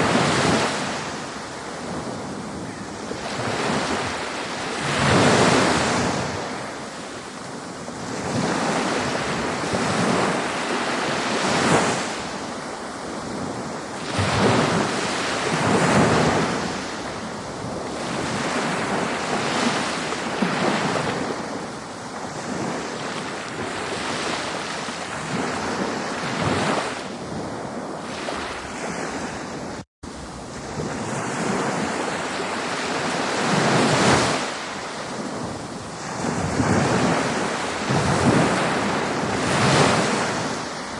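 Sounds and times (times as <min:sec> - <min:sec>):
ocean waves breaking: 0:00.0 - 0:40.9.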